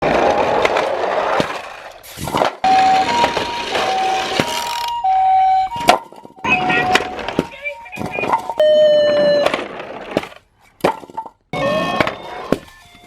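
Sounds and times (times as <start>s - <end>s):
two-tone siren: 2.6s - 9.6s, 11.6s - 13.0s.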